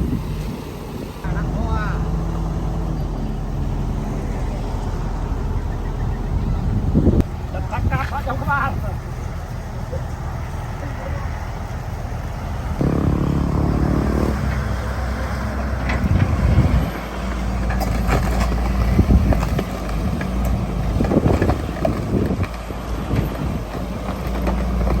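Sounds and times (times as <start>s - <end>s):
diesel engine running: 0.0s - 25.0s.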